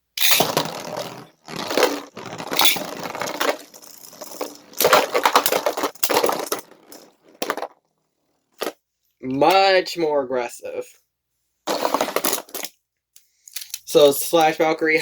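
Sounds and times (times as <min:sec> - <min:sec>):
spinning tops clashing: 0:00.2 - 0:07.7.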